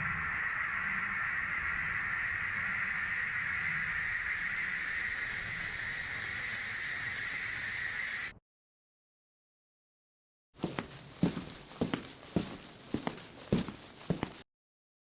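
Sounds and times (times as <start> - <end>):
faint low rumble: 0.0 - 6.6
static hiss: 0.0 - 8.4.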